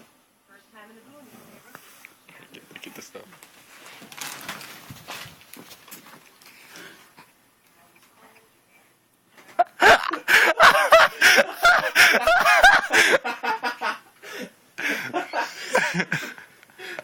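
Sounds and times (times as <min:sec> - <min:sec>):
person laughing hard: 0:09.6 - 0:17.0.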